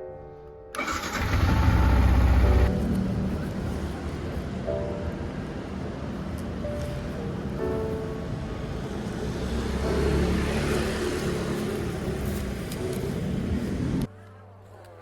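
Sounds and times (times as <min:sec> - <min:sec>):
vehicle passing by: 0:08.4 - 0:14.1.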